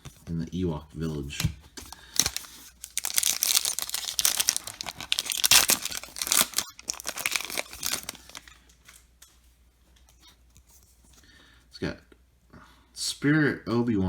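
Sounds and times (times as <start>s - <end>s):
foil wrapper crinkling: 1.9s - 9.1s.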